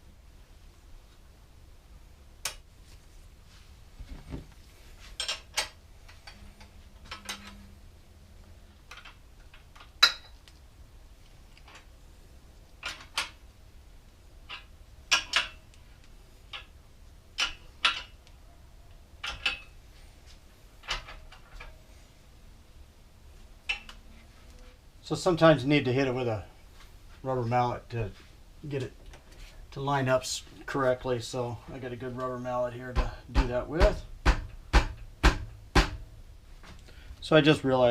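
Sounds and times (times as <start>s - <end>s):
metal parts clicking and clinking: 5.2s - 7.7s, 8.7s - 10.6s, 14.5s - 15.8s, 19.2s - 19.8s.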